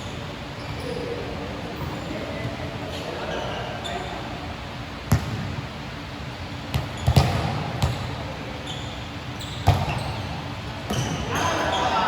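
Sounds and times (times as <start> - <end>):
background noise: 0.0 - 12.0
basketball bouncing on court: 5.1 - 5.6, 6.6 - 8.2, 9.4 - 11.4.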